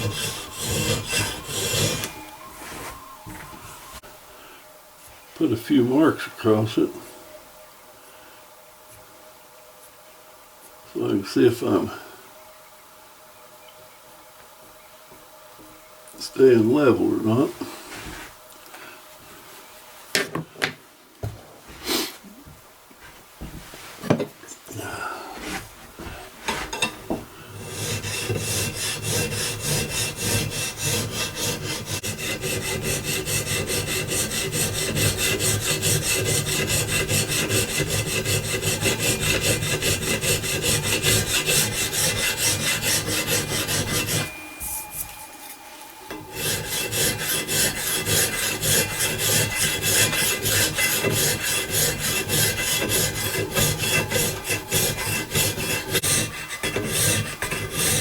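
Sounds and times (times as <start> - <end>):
file scraping metal: 0.0 - 3.2, 26.5 - 58.0.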